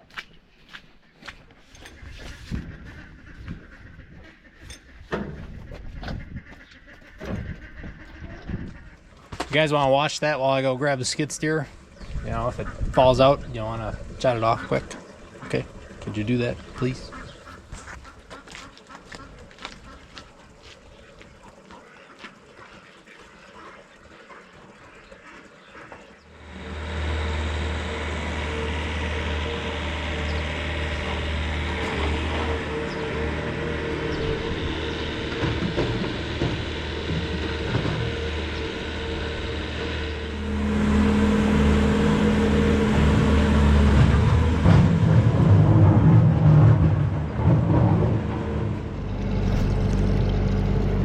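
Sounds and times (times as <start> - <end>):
skid steer diesel engine: 26.1 - 51.0.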